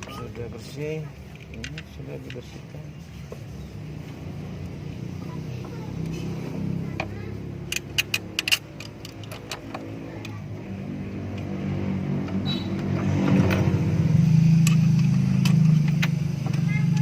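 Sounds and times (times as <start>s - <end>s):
sharp metallic clicks: 7.0s - 17.0s.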